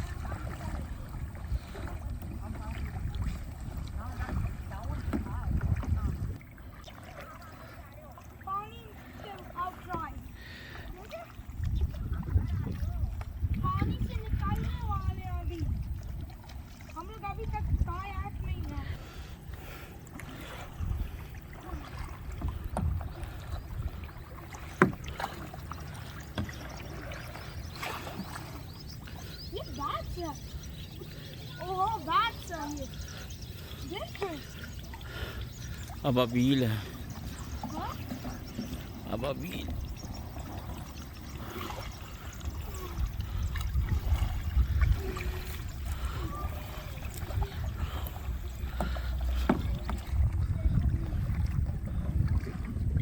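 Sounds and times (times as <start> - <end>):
wind on microphone: 0.0 - 6.5, 10.9 - 19.4, 20.4 - 25.2, 39.6 - 53.0
paddle strokes and splashes: 0.0 - 53.0
water lapping against hull: 0.0 - 53.0.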